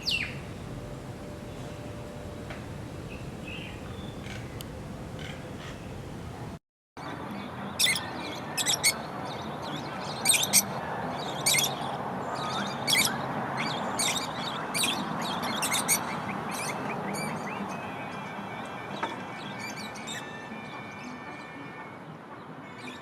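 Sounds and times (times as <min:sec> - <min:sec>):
birds chirping: 0:00.0 - 0:06.6, 0:07.3 - 0:21.2
steady background hiss: 0:00.0 - 0:06.6.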